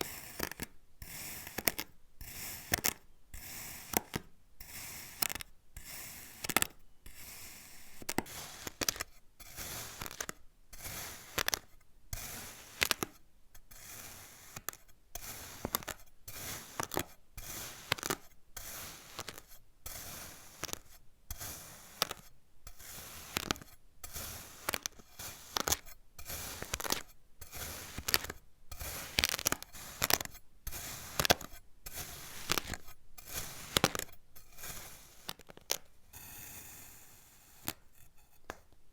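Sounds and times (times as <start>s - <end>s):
kinetic sand being cut: 7.6s - 13.1s, 13.9s - 20.9s, 21.5s - 22.2s, 22.8s - 35.7s.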